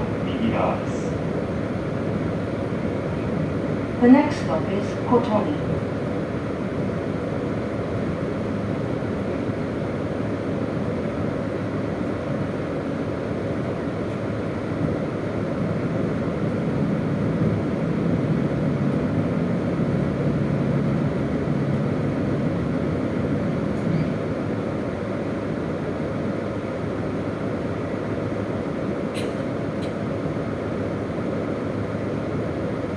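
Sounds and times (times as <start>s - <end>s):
diesel engine drone: 0.0s - 26.8s
train wheels rumbling on rails: 13.6s - 25.7s.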